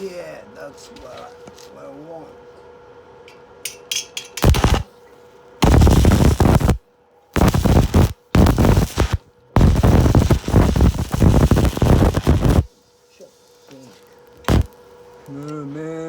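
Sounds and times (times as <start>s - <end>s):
electric arc welding crackling: 4.4s - 4.9s, 5.6s - 6.8s, 7.4s - 12.7s, 14.4s - 14.8s.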